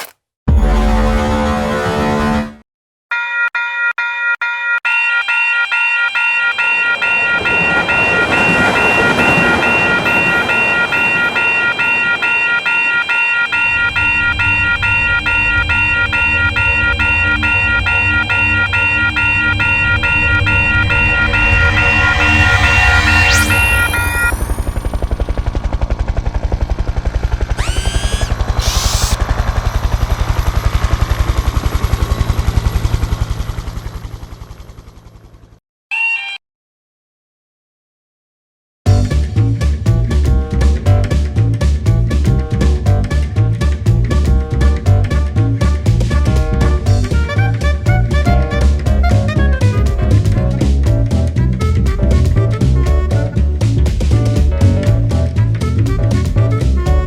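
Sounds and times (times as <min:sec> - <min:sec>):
railroad crossing bell ringing: 0:04.9 - 0:25.3
rushing noise: 0:06.6 - 0:34.5
helicopter rotor chop: 0:06.6 - 0:35.6
low hum: 0:06.8 - 0:35.6
rising electronic whoops: 0:07.0 - 0:25.4, 0:27.6 - 0:29.3.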